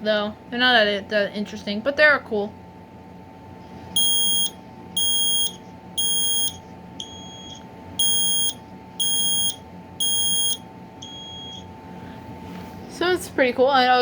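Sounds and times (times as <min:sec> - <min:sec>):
fainter beep: 0:04.0 - 0:11.6
smoke alarm beeping: 0:04.0 - 0:11.7.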